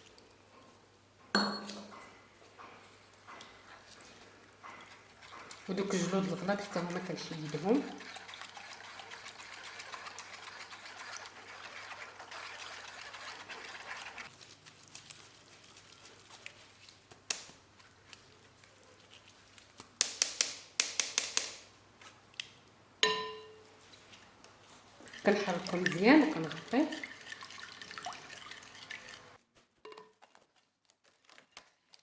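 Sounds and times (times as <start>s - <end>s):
juice pouring through a strainer: 4.3s - 17.1s, 24.6s - 29.4s
ringing clink: 23.0s - 23.6s.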